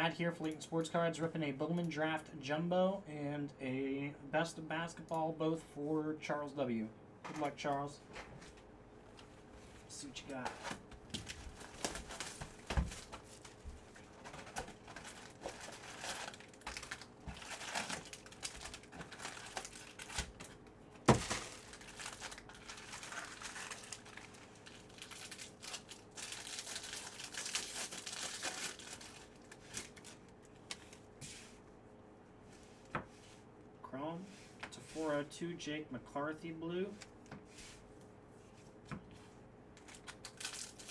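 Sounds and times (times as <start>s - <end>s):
plastic wrappers crinkling and tearing: 10.3s - 31.1s, 39.8s - 40.9s.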